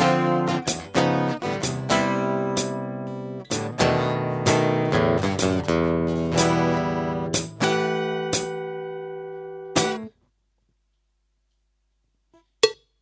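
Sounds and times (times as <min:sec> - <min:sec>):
stomp box beat: 0:00.0 - 0:02.8
acoustic guitar strumming chords: 0:00.0 - 0:10.1.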